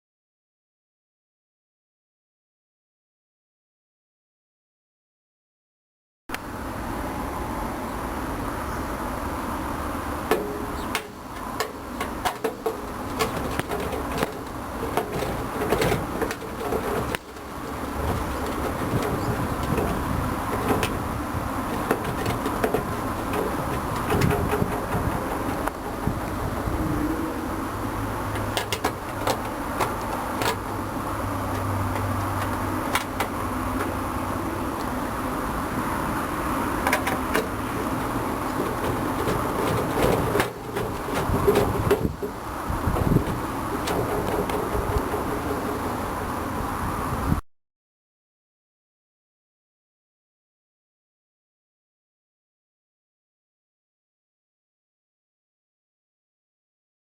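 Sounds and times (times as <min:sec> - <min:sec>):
hard parts clicking and knocking: 0:10.0 - 0:26.8, 0:27.4 - 0:35.3, 0:36.6 - 0:46.4.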